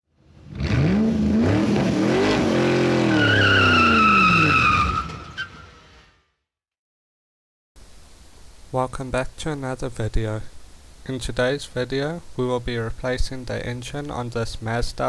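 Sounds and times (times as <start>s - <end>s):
car engine revving: 0.2s - 5.2s
high tyre squeal: 0.7s - 6.2s.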